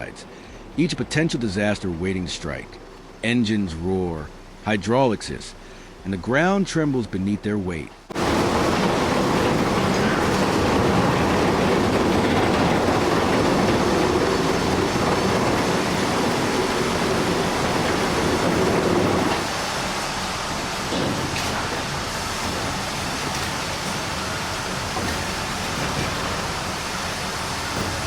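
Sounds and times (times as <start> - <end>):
heavy machinery running: 8.1 - 28.0.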